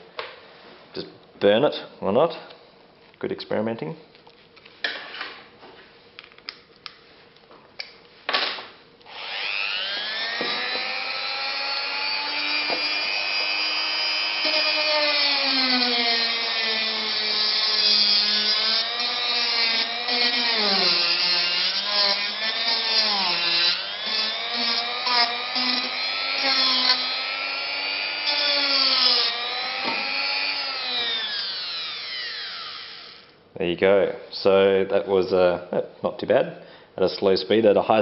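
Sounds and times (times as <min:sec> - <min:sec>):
rotary tool motor whine: 0:09.1 - 0:33.3.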